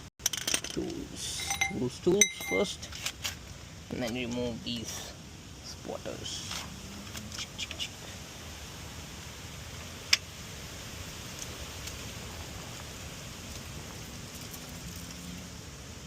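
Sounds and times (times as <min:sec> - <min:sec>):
steady hiss: 0:00.0 - 0:16.0
sharp metallic clink: 0:01.3 - 0:02.8.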